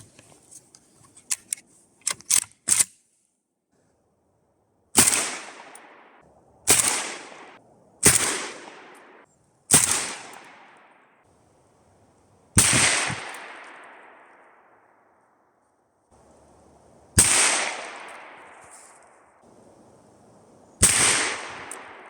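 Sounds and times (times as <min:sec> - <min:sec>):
shotgun shots with echo: 0:05.0 - 0:10.7, 0:12.6 - 0:14.2, 0:17.2 - 0:18.9, 0:20.8 - 0:22.0.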